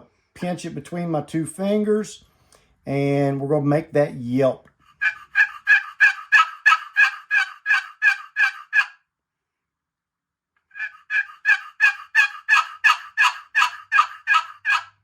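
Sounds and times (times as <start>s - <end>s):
box turkey call yelping: 4.9s - 9.0s, 10.7s - 15.0s.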